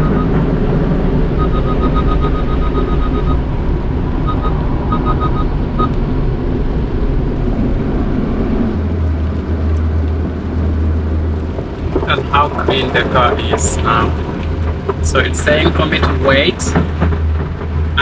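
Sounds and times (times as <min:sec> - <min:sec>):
parking sensor beeps: 0:00.0 - 0:00.5, 0:01.3 - 0:03.6, 0:04.2 - 0:06.0
car wash machinery rumble: 0:00.0 - 0:18.0
low steady hum: 0:00.0 - 0:18.0.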